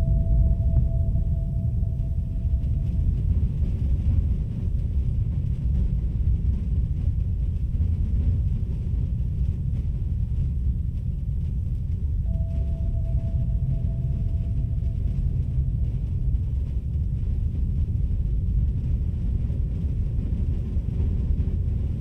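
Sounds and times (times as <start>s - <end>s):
held tone: 0.0s - 4.2s, 12.2s - 17.1s
low rumbling drone: 0.0s - 6.6s, 11.4s - 22.0s.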